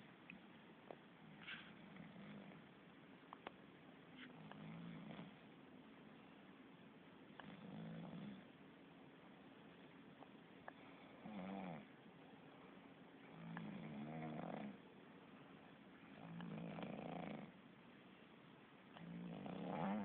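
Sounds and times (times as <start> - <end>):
person snoring: 13.3 - 14.8, 19.0 - 20.0.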